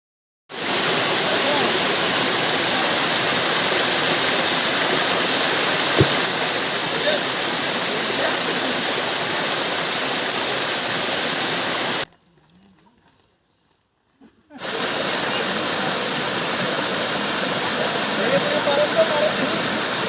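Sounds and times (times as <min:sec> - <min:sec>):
waterfall roaring: 0:00.5 - 0:12.1, 0:14.6 - 0:20.0
short knock: 0:05.9 - 0:06.3.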